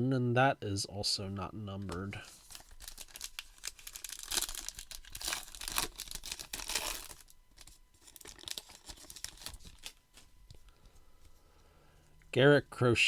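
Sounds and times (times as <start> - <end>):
plastic wrapper tearing and crinkling: 2.3 - 10.3.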